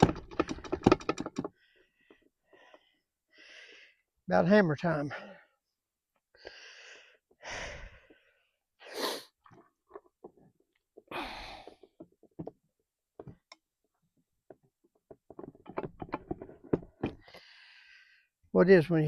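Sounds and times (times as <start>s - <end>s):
clicks and taps of parts: 0.0s - 1.5s.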